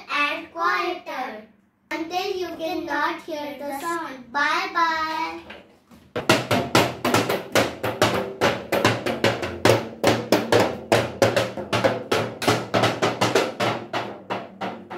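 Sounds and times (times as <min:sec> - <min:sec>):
music with fast drum beat: 0:06.2 - 0:14.9.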